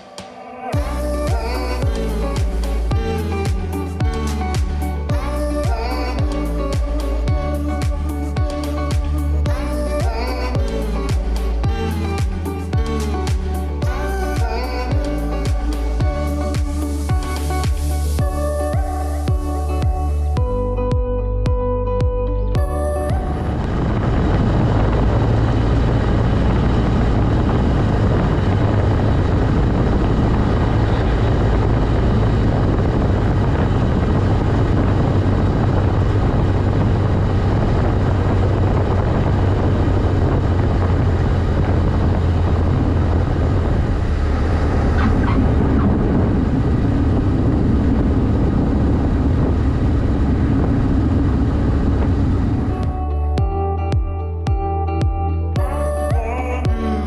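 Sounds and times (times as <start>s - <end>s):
airplane engine drone: 22.6s - 53.4s.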